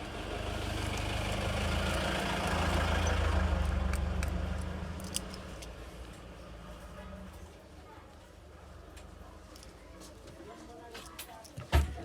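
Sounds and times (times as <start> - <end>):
vehicle engine passing by: 0.0 - 7.4.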